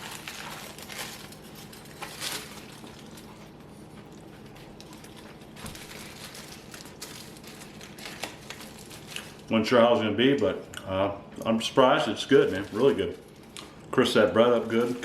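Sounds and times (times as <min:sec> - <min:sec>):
person chewing crunchy sandwich: 0:00.0 - 0:09.4
low steady hum: 0:00.0 - 0:15.0.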